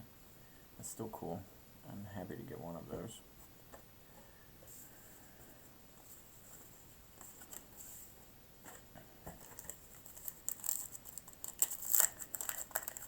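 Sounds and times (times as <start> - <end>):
cards and pack rustling: 8.7 - 13.0.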